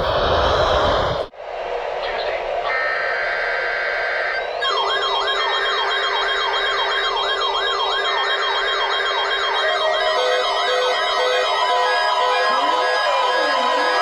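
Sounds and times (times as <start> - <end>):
electronic siren sweeping: 2.7 - 14.0.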